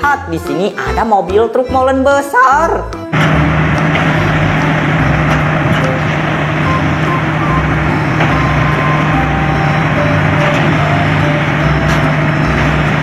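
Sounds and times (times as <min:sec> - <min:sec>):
truck engine running: 0:03.1 - 0:13.0
short beeps: 0:05.8 - 0:12.8.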